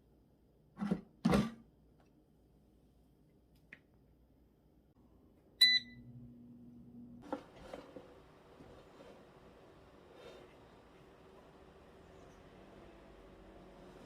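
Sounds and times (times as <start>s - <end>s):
appliance beep: 5.6s - 6.2s.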